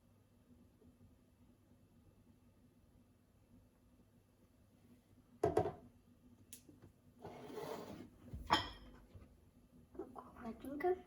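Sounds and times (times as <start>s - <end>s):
kitchenware knock with ring: 8.4s - 8.9s.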